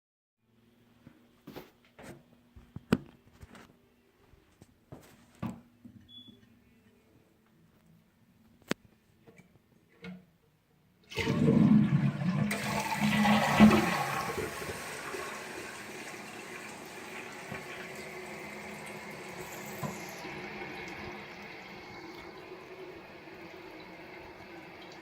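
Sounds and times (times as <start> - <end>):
tank refilling with running water: 11.1 - 25.0
toilet flushing: 11.1 - 25.0.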